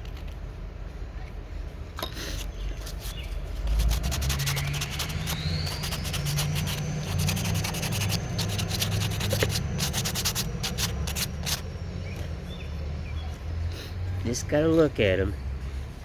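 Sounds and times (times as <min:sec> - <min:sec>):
hand tool scraping wood: 0:02.2 - 0:11.7
faint rising whistle: 0:04.1 - 0:09.1.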